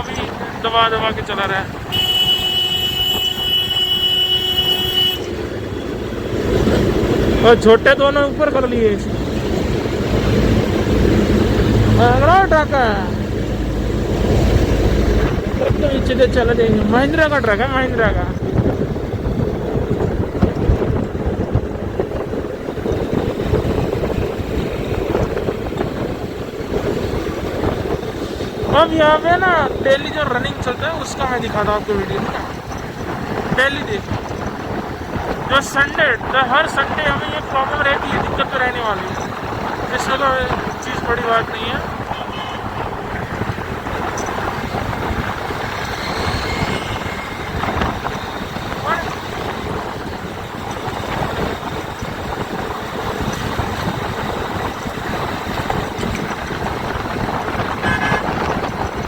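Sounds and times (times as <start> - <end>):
vehicle rumble in traffic: 0.0 - 59.0
wind buffeting microphone: 0.0 - 59.0.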